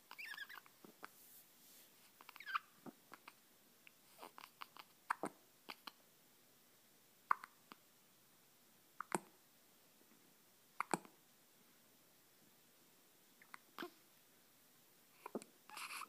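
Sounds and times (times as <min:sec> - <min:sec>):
hiccups: 0:07.3 - 0:07.6.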